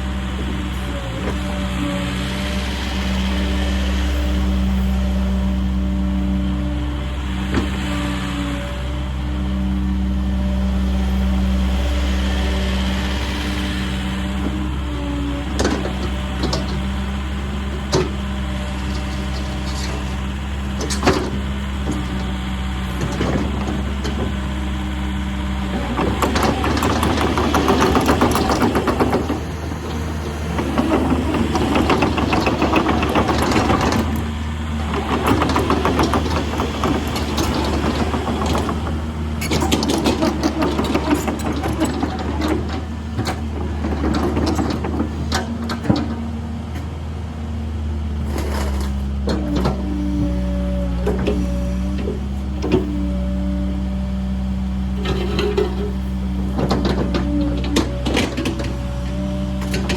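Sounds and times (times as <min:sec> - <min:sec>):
diesel engine idling: 0:00.0 - 0:48.3
dense rattle: 0:15.4 - 0:24.5, 0:25.7 - 0:46.3.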